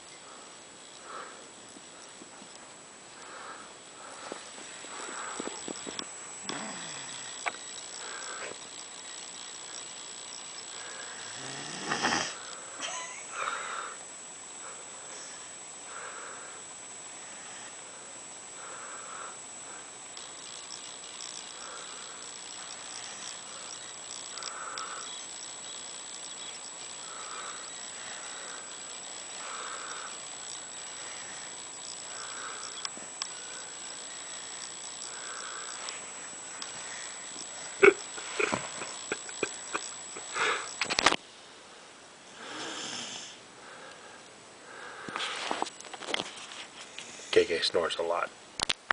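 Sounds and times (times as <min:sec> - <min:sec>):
faint high whine: 0:00.0 - 0:48.9
snuffling breaths: 0:03.2 - 0:08.7, 0:27.0 - 0:40.9
person snoring: 0:06.4 - 0:08.6, 0:10.7 - 0:12.6, 0:42.3 - 0:43.4
small clicks: 0:20.0 - 0:27.0, 0:28.8 - 0:35.1, 0:40.7 - 0:41.2, 0:48.6 - 0:48.9.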